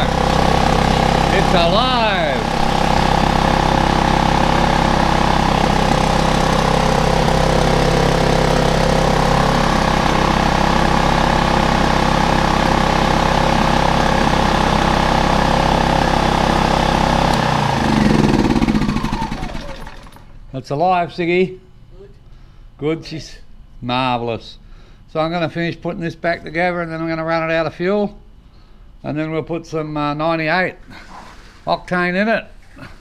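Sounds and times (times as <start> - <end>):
petrol generator engine running: 0.0 - 20.4.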